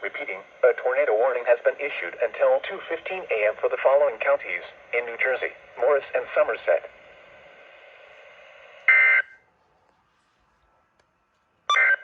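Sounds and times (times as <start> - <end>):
radio hiss: 0.0 - 9.3
harsh two-tone data burst: 8.8 - 9.4.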